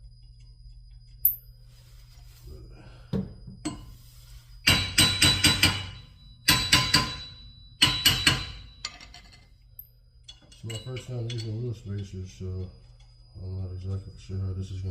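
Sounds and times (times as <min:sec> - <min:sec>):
hammer tapping metal: 0:01.2 - 0:01.5, 0:04.7 - 0:09.0.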